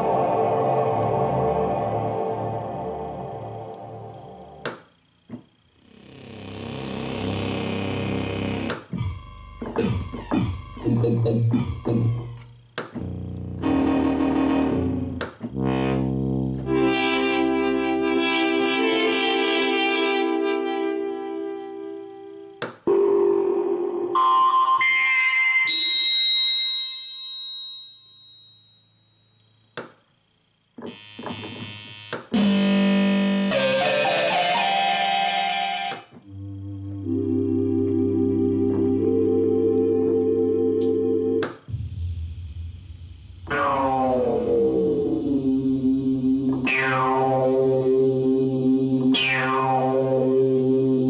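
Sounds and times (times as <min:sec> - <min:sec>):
synthesizer rising sweep: 0:00.0 - 0:04.6, 0:32.4 - 0:51.0
synthesizer notes and chords: 0:00.0 - 0:05.2, 0:05.8 - 0:26.4, 0:31.2 - 0:51.0.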